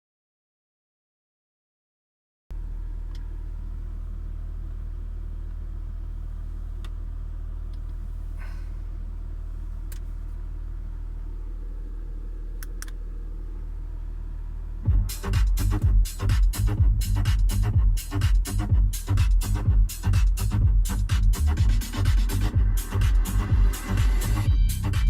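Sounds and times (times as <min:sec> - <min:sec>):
steady low electrical hum: 0:02.5 - 0:25.0
electronic dance music: 0:14.9 - 0:25.0.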